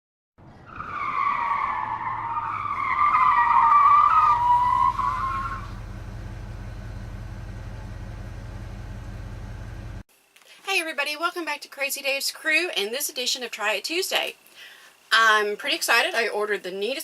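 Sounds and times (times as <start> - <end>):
loud wavering squeal: 0.6 - 5.9.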